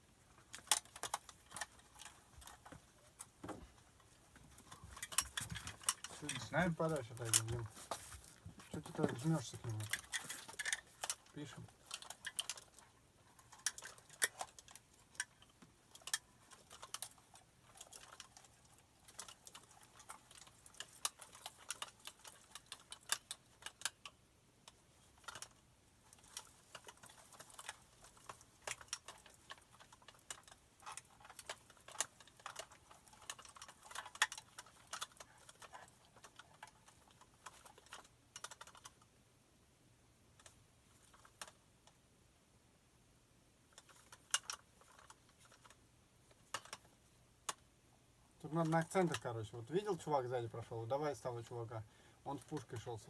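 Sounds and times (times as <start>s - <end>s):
small props clicking and tapping: 0.0s - 39.1s, 40.4s - 42.0s, 43.7s - 47.7s, 48.4s - 53.0s.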